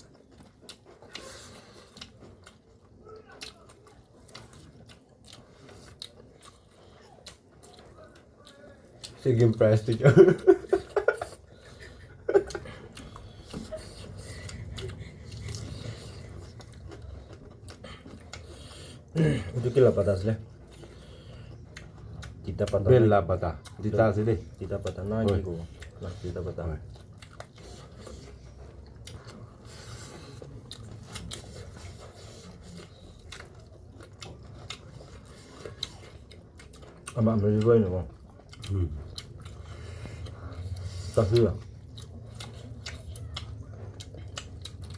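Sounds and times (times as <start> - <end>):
eating sounds: 0.0 - 44.9
person chewing: 0.0 - 44.9
small clicks and mouth noises: 11.2 - 44.9.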